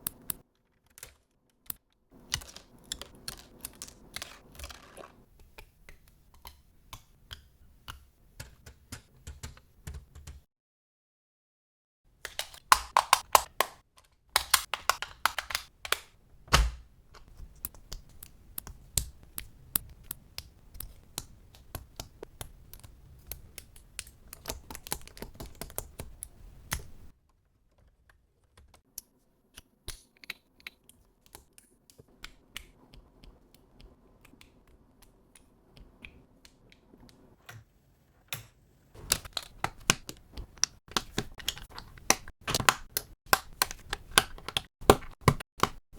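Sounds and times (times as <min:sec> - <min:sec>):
plastic bricks clicking: 0:00.1 - 0:05.2, 0:14.4 - 0:16.1.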